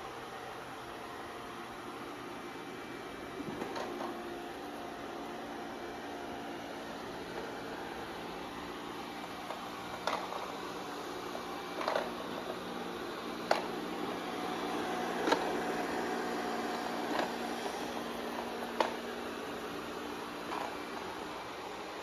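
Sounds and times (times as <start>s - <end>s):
robot vacuum humming: 0.0s - 22.0s.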